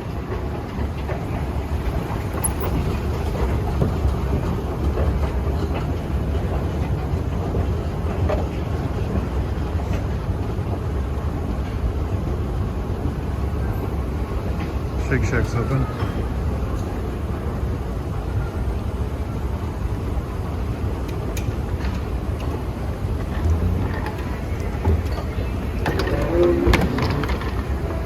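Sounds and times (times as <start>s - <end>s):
low rumble of airport terminal: 0.0s - 28.0s
light clatter: 0.7s - 7.0s, 21.0s - 28.0s.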